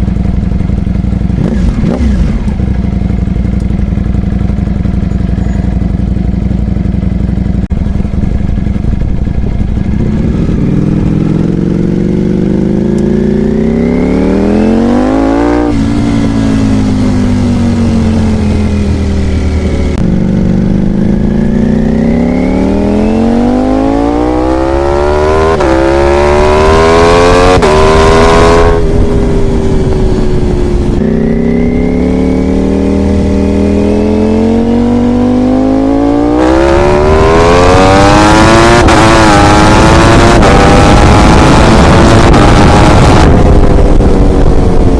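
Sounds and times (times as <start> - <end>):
race bike engine accelerating: 9.2 - 44.9.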